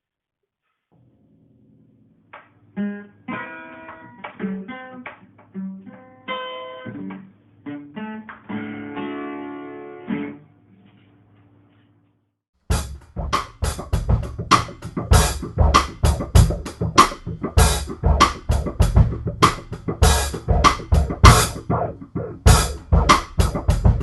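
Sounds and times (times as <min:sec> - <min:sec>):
guitar plucked and strummed: 0:02.7 - 0:10.5.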